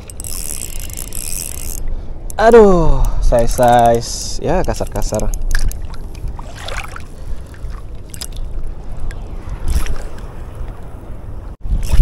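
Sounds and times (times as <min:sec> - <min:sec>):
wind rumbling on microphone: 0:00.0 - 0:12.0
water lapping: 0:05.4 - 0:12.0.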